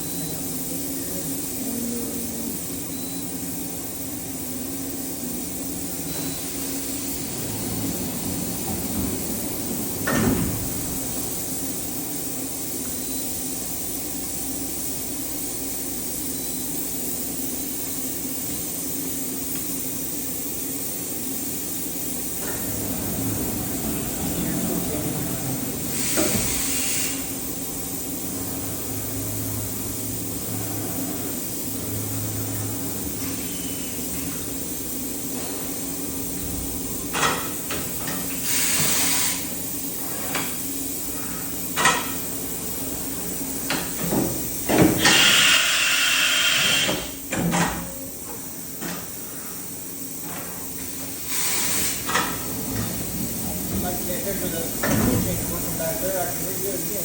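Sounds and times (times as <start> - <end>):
machining center humming: 0.0 - 57.0
machine clunks and knocks: 10.0 - 10.8, 54.8 - 55.5
short hissing bursts: 25.9 - 27.4, 38.4 - 39.6, 45.0 - 47.2, 51.2 - 52.1.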